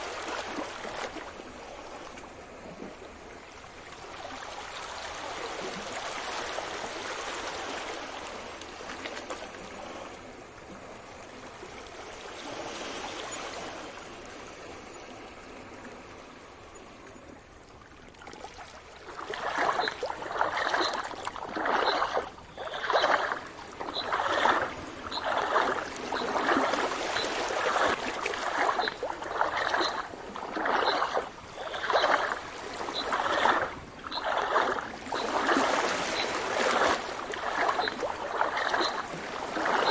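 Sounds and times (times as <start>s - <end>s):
water sloshing: 18.1s - 39.9s
sea waves washing: 19.0s - 39.9s.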